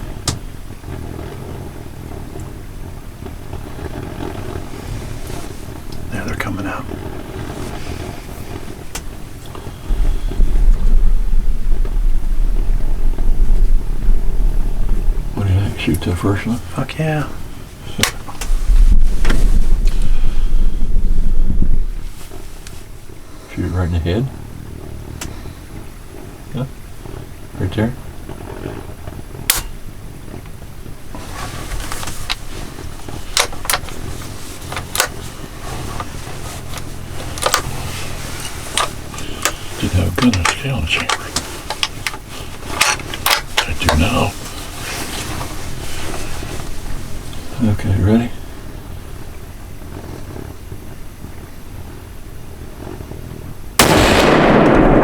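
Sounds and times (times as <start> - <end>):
loud low rumble: 5.7 - 22.3, 53.7 - 55.0.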